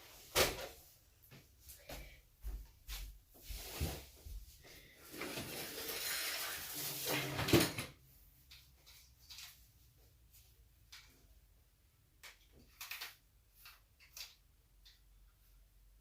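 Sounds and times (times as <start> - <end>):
toy blaster clicks and knocks: 12.6 - 14.4.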